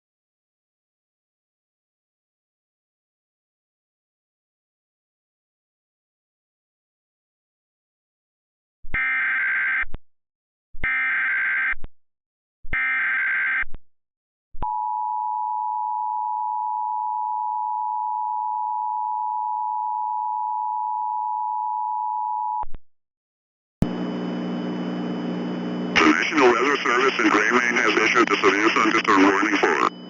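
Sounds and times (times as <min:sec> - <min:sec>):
data header bursts: 0:26.0 - 0:29.9.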